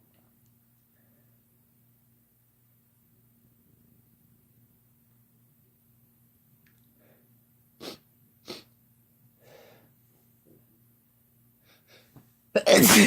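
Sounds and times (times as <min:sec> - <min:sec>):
man sniffing: 0:07.8 - 0:08.7
man sneezing loudly: 0:12.6 - 0:13.0.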